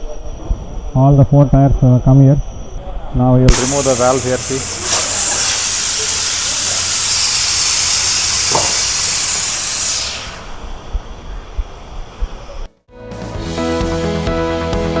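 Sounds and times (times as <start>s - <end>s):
air hissing out of tyre: 3.5s - 10.7s.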